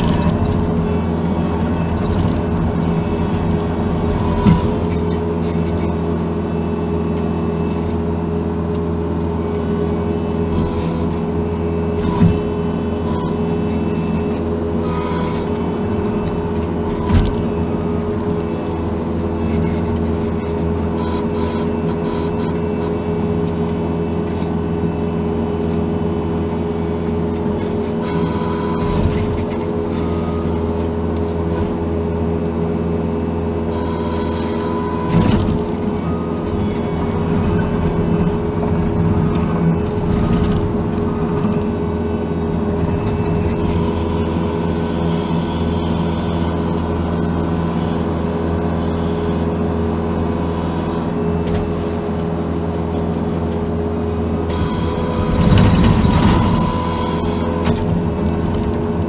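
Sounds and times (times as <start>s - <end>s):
diesel engine running under load: 0.0s - 59.0s
hydraulic whine: 0.0s - 59.0s.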